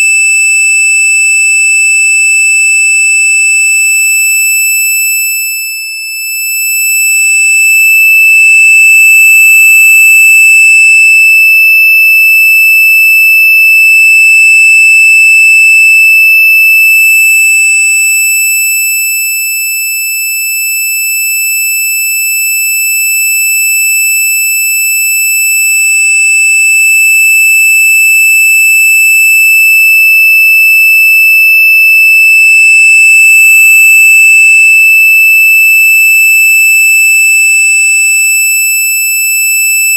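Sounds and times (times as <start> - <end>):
high-pitched electronic tone: 8.3 - 11.1, 32.3 - 34.8.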